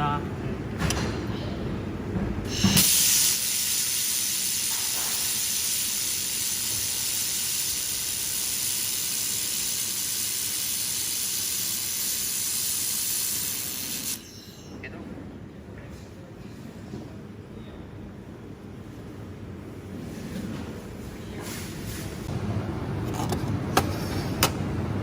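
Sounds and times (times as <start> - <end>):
welding gas hissing: 2.5 - 14.2.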